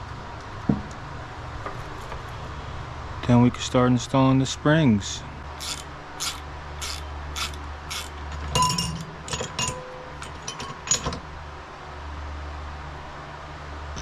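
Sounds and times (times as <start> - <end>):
steady low hum: 0.0 - 14.0
small metal parts clinking: 5.6 - 11.2.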